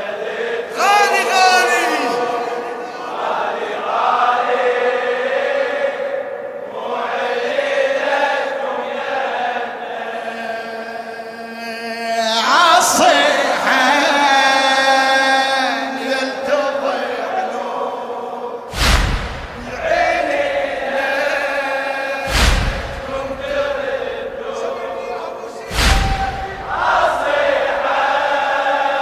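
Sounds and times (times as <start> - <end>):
hummed vocal drone: 9.9 - 16.7, 19.2 - 29.0.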